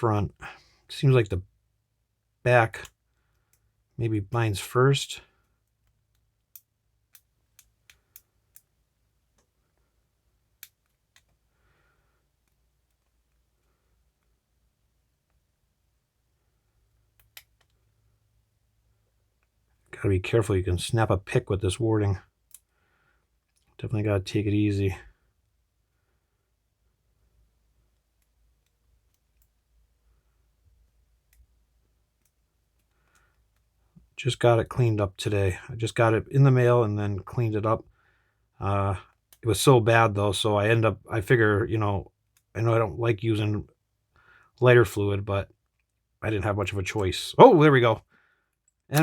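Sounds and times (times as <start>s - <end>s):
lock pick clicks: 48.6s - 49.0s.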